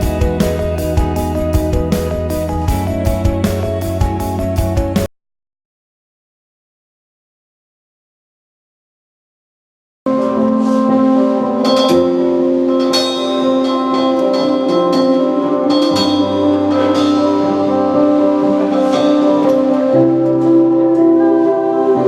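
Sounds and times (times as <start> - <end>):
keyboard chords: 0.0 - 5.1, 10.1 - 22.0
percussion hits: 0.0 - 5.1, 11.5 - 20.4
bell-like notes: 10.7 - 21.0.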